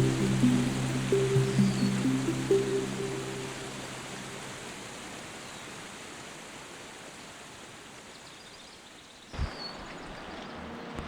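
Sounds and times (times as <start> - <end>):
background music: 0.0 - 5.0
flowing water rushing: 0.0 - 11.0.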